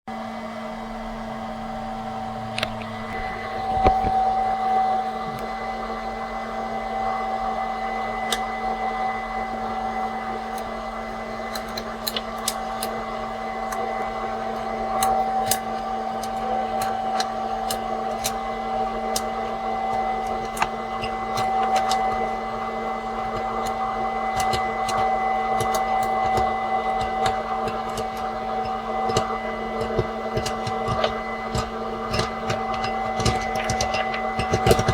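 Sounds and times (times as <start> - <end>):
popcorn maker motor whirr: 0.1 - 34.9
popcorn kernels popping: 10.4 - 34.9.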